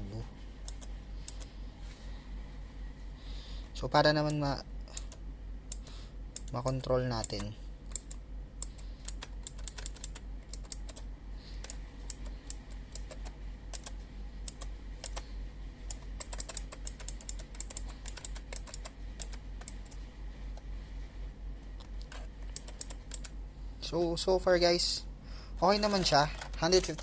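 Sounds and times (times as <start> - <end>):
steady low hum: 0.0 - 27.0
mechanical keyboard typing clicks: 0.7 - 1.5, 6.4 - 11.0, 11.6 - 15.2, 15.9 - 20.0, 22.0 - 23.4.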